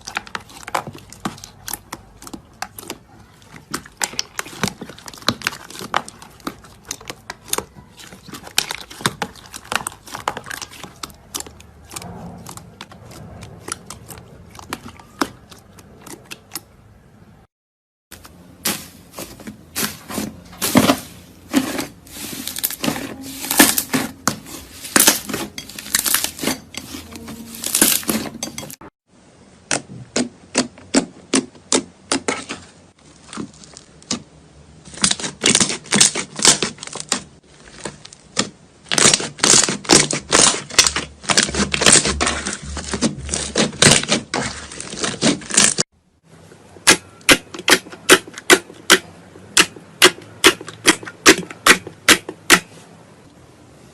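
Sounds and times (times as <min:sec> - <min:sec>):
crunchy slime crackling and popping: 0:00.0 - 0:16.7, 0:18.2 - 0:28.3, 0:33.0 - 0:45.8.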